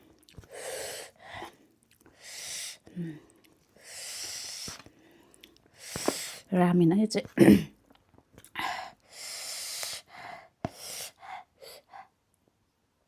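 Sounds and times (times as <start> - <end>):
person breathing hard through mouth: 0.4 - 6.5, 8.6 - 12.1.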